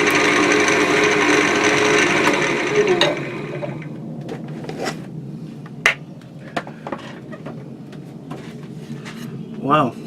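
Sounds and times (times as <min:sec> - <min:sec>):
wood lathe humming: 0:00.0 - 0:04.0.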